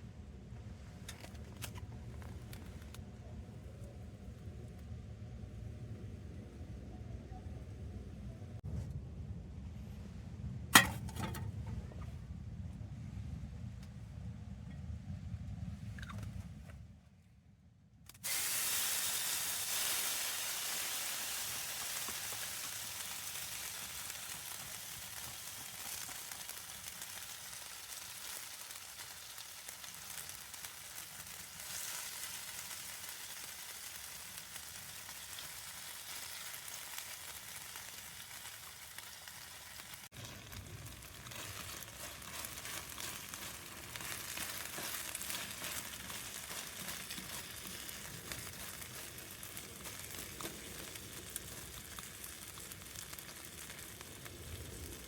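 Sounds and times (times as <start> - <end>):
sizzling crackling hiss: 18.1 - 55.0.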